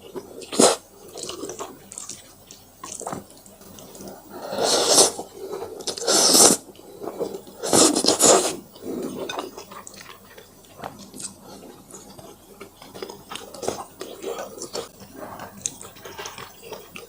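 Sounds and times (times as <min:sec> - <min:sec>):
soft wet chewing: 0:00.0 - 0:17.0
loud noodle slurp: 0:04.4 - 0:05.2, 0:05.9 - 0:06.6, 0:07.6 - 0:08.6.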